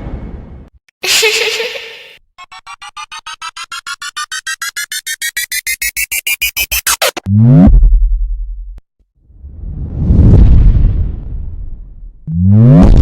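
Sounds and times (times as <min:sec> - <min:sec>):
synthesized riser: 0:02.5 - 0:07.9
bass drop boom: 0:07.3 - 0:13.0.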